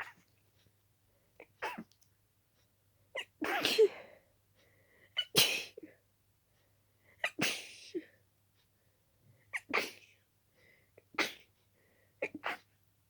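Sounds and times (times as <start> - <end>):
person sneezing: 3.4 - 4.1, 5.2 - 5.8, 9.6 - 10.0.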